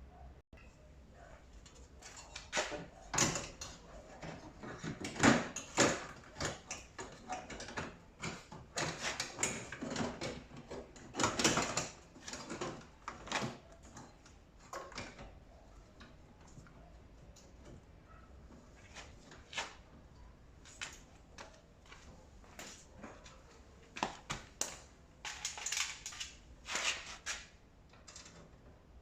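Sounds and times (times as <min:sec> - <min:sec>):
dryer parts knocking and clicking: 0:01.6 - 0:22.2.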